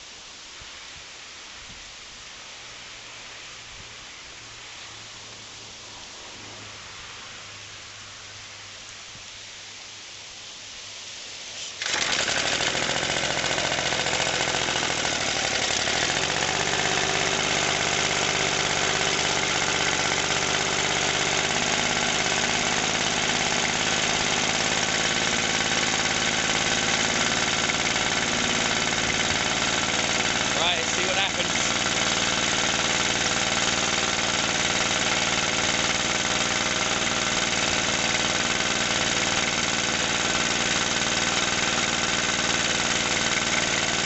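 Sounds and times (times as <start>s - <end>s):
small engine starting and running: 11.6s - 44.0s.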